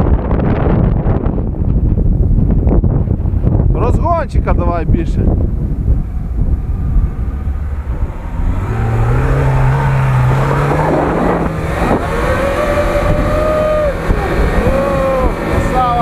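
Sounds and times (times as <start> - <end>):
car engine revving hard: 6.3 - 16.0.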